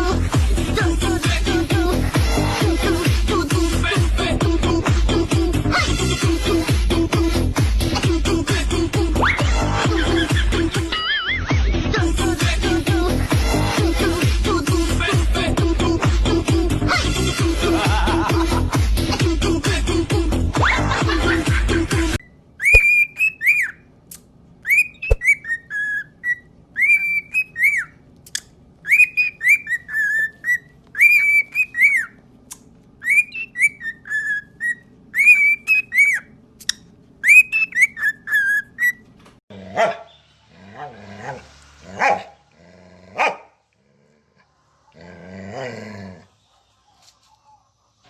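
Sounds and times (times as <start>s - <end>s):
dog barking: 39.6s - 40.1s, 40.8s - 42.4s, 43.2s - 43.6s.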